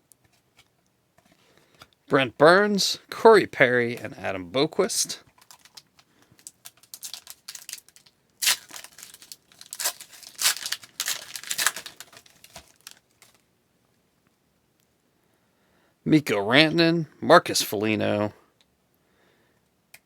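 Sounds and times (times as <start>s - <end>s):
card pack wrapper crinkling: 4.8s - 13.4s.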